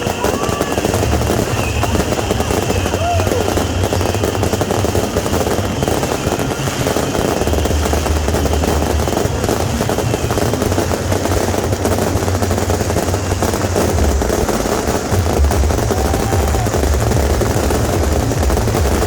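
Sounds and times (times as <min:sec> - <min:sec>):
firecrackers crackling: 0:00.0 - 0:19.0
steady low rumble: 0:07.5 - 0:19.0.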